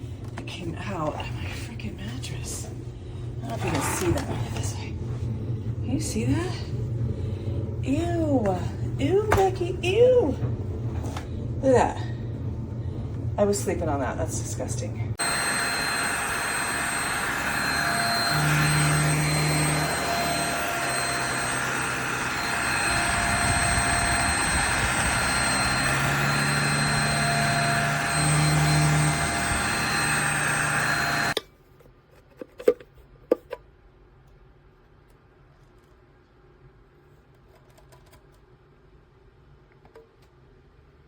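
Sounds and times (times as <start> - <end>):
vacuum cleaner motor whine: 15.2 - 31.4.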